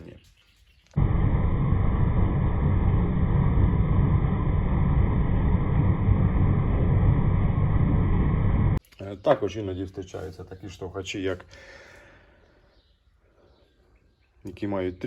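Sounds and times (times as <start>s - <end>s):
machine rumbling: 1.0s - 8.8s.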